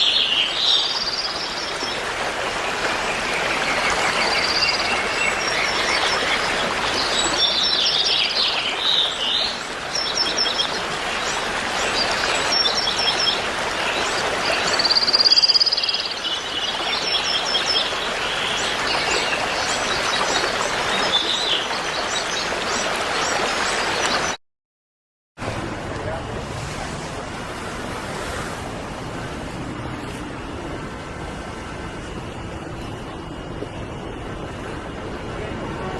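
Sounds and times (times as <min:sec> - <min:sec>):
flowing water rushing: 0:00.0 - 0:24.4, 0:25.4 - 0:35.9
songbirds chirping and trilling: 0:00.0 - 0:24.4.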